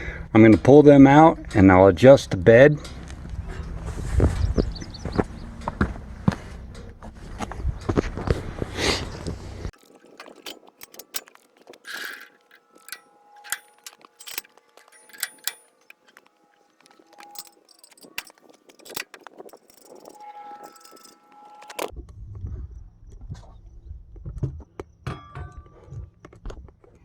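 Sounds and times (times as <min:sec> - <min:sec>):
metal clinks and knocks: 0:09.4 - 0:21.9.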